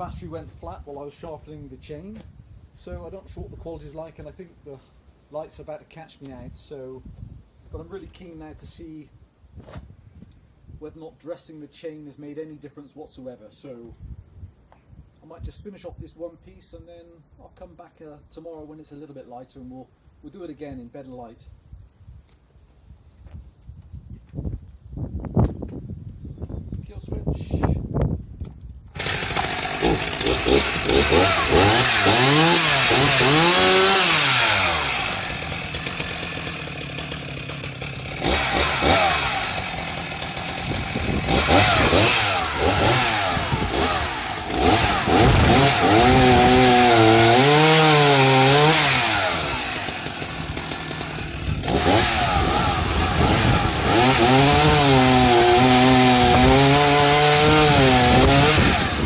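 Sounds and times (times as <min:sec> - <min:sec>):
chainsaw revving and cutting wood: 0:29.0 - 0:59.0.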